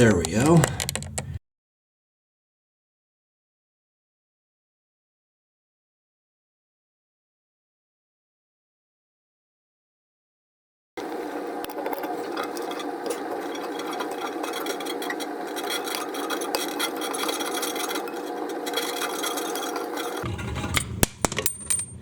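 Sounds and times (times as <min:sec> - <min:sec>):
metallic rasping and scraping: 0:11.0 - 0:21.9.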